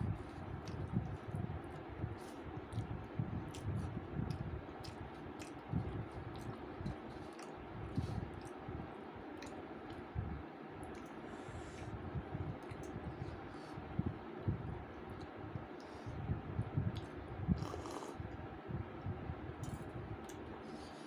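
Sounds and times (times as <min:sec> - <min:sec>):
person chewing food: 0:00.1 - 0:08.6, 0:16.9 - 0:18.2
mouth clicks and smacks: 0:02.7 - 0:08.6, 0:09.4 - 0:10.0, 0:12.6 - 0:13.0, 0:16.9 - 0:18.1.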